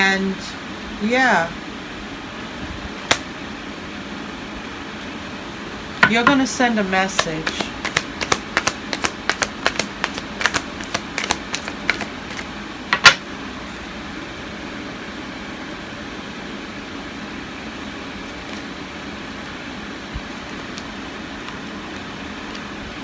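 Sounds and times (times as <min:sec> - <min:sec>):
room fan humming: 0:00.0 - 0:23.0
card snap: 0:03.1 - 0:03.3, 0:07.2 - 0:13.2
cards tapping and slapping: 0:03.1 - 0:03.3, 0:07.1 - 0:13.2, 0:20.2 - 0:22.8.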